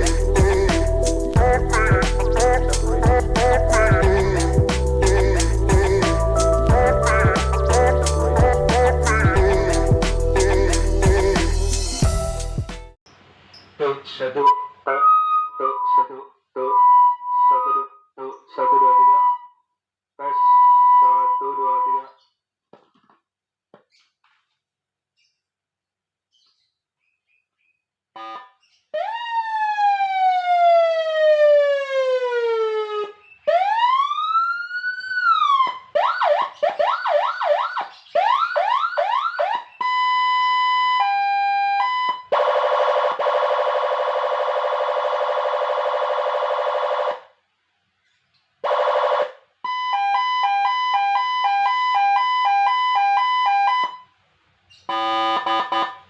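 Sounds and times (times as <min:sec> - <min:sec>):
electronic siren tones: 0:18.8 - 0:19.6, 0:20.2 - 0:22.1, 0:28.2 - 0:47.2, 0:48.6 - 0:54.1, 0:54.9 - 0:56.0.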